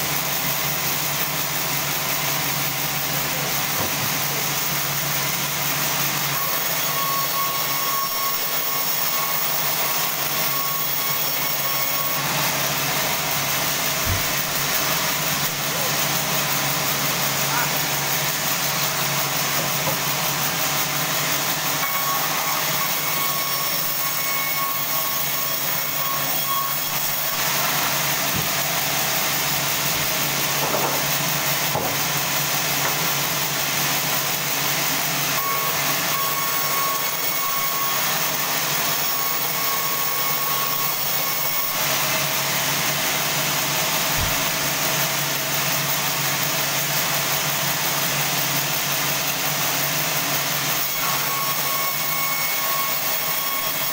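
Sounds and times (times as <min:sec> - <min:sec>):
band saw running: 0:00.0 - 0:53.9.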